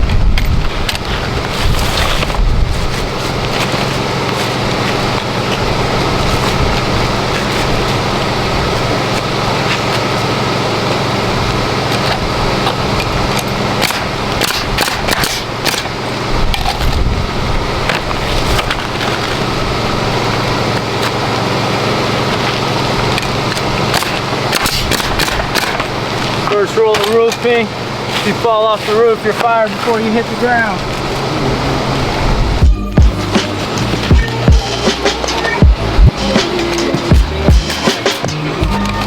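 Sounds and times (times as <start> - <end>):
scraping of shingles: 0.6 - 31.4
steady low hum: 30.8 - 39.0.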